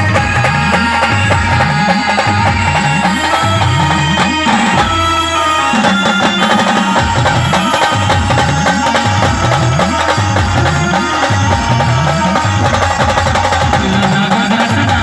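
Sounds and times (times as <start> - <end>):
band playing folk music: 0.0 - 15.0.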